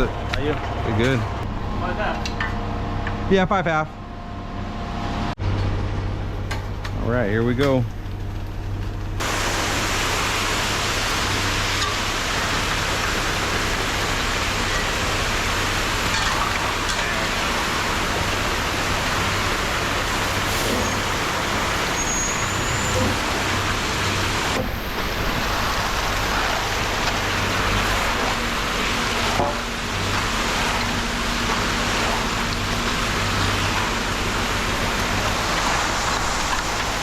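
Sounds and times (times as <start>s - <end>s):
concrete mixer truck running: 7.8s - 37.0s.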